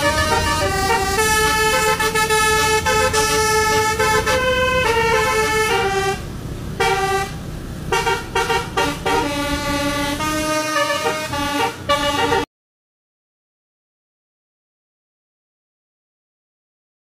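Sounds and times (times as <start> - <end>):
low rumble: 0.0 - 10.5
bus horn playing a tune: 0.0 - 12.5.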